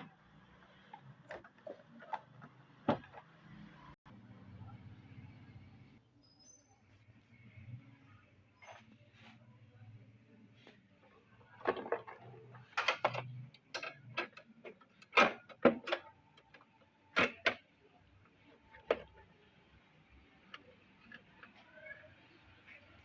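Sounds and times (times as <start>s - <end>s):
computer parts clicking and knocking: 11.6s - 17.7s.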